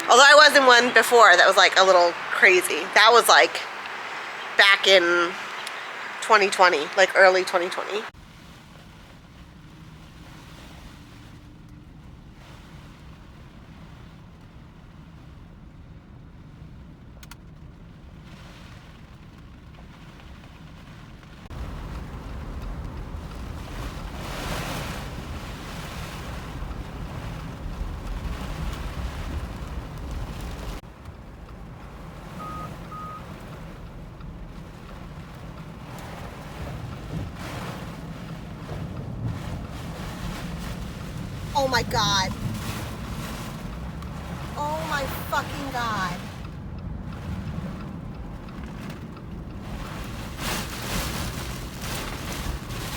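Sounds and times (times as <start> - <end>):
wind buffeting microphone: 0.0 - 8.2, 21.4 - 52.9.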